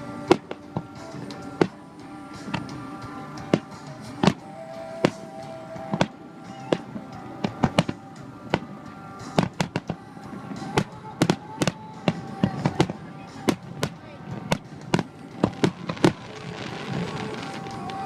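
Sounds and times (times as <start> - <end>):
music with held tones: 0.0 - 18.0
fireworks shells bursting: 5.9 - 10.0.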